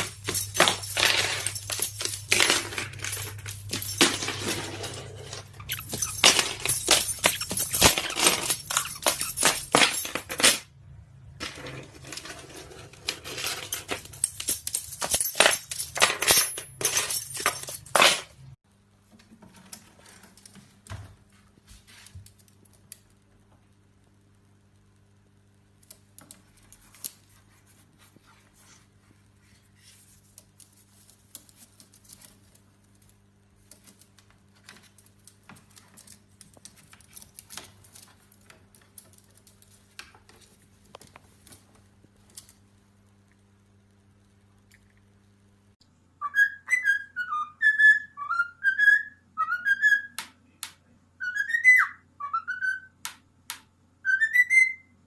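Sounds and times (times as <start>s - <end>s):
parrot whistling: 46.2s - 50.2s, 51.2s - 53.0s, 54.0s - 54.9s.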